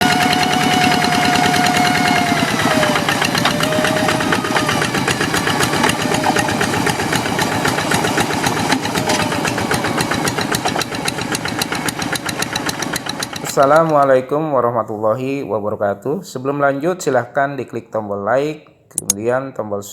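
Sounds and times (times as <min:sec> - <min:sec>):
diesel engine knocking with whine: 0:00.0 - 0:14.0.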